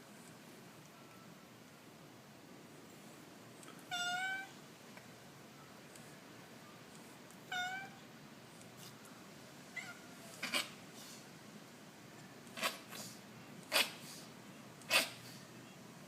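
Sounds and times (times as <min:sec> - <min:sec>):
cat meowing: 0:03.9 - 0:04.6, 0:07.5 - 0:08.0, 0:09.8 - 0:10.7.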